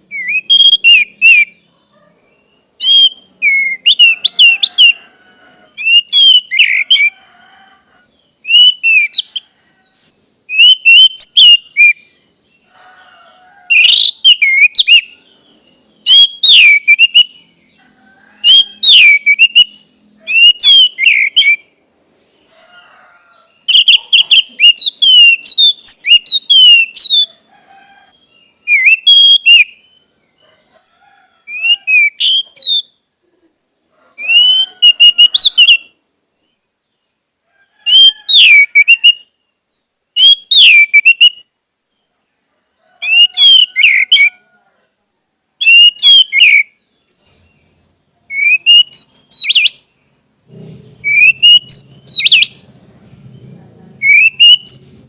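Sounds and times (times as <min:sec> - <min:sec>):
thrush singing whistled phrases: 0:00.0 - 0:01.6, 0:02.8 - 0:07.3, 0:08.4 - 0:09.4, 0:10.5 - 0:12.2, 0:13.7 - 0:17.8, 0:18.4 - 0:21.7, 0:23.6 - 0:27.3, 0:28.6 - 0:30.0, 0:31.5 - 0:33.0, 0:34.2 - 0:35.9, 0:37.9 - 0:39.3, 0:40.2 - 0:41.5, 0:43.0 - 0:44.4, 0:45.6 - 0:46.8, 0:48.3 - 0:49.8, 0:51.0 - 0:52.7, 0:54.0 - 0:55.0
steady high hiss: 0:00.0 - 0:38.3, 0:46.6 - 0:55.0.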